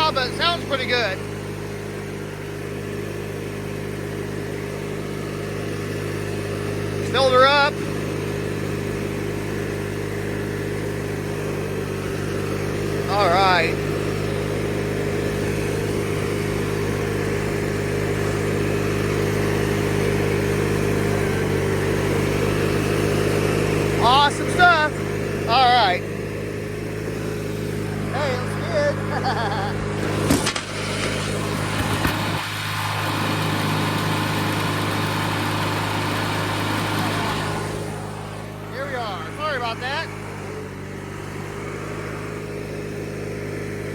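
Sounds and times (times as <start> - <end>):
lawnmower engine running: 0.0 - 43.9.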